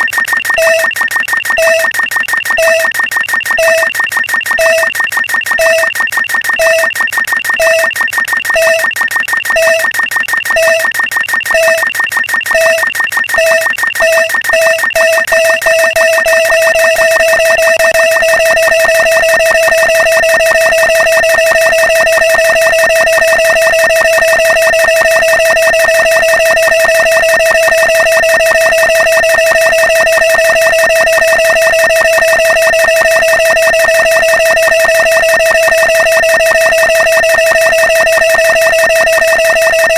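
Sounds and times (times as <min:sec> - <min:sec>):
electronic beeps: 0:00.0 - 0:01.9, 0:02.6 - 0:03.9, 0:04.6 - 0:04.9, 0:05.6 - 0:05.9, 0:06.5 - 0:06.9, 0:07.5 - 0:07.9, 0:08.5 - 0:09.9, 0:10.5 - 0:11.9, 0:12.5 - 0:39.9
steady high electronic tones: 0:15.8 - 0:39.9.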